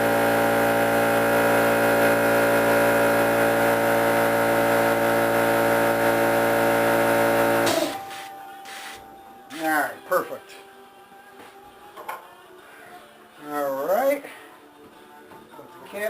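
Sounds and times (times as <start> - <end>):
air compressor humming: 0.0 - 10.2.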